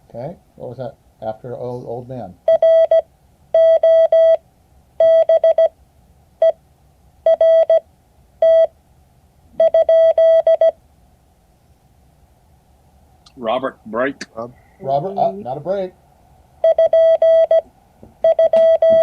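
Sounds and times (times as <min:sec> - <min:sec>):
morse code beeps: 0:02.5 - 0:03.0, 0:03.6 - 0:04.4, 0:05.0 - 0:05.7, 0:07.3 - 0:07.8, 0:08.4 - 0:08.7, 0:09.6 - 0:10.8, 0:16.6 - 0:17.6, 0:18.2 - 0:19.0.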